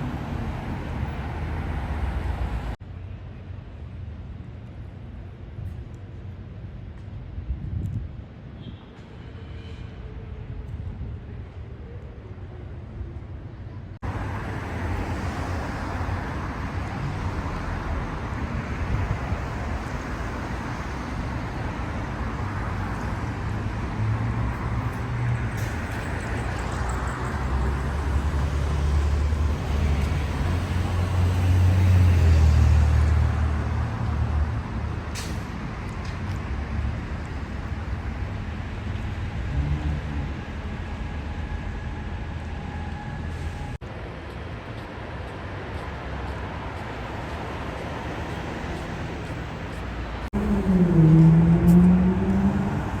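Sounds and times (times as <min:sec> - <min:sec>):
city street traffic: 0:00.0 - 0:53.0
heavy vehicle engine rumble: 0:14.0 - 0:53.0.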